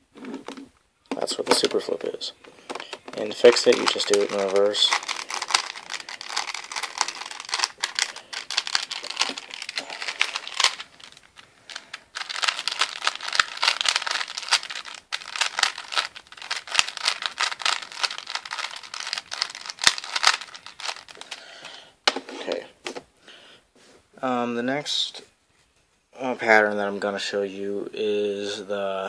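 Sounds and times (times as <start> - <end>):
puzzle cube clicking and scraping: 0.2 - 21.4.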